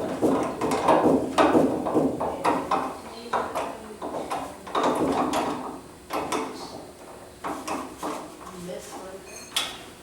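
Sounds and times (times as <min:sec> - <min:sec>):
metal clicks and knocks: 0:00.3 - 0:08.2.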